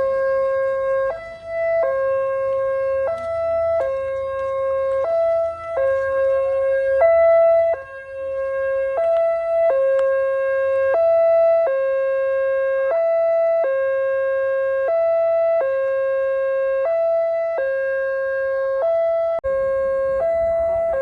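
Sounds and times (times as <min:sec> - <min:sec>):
two-tone level crossing alarm: 0:00.0 - 0:21.0.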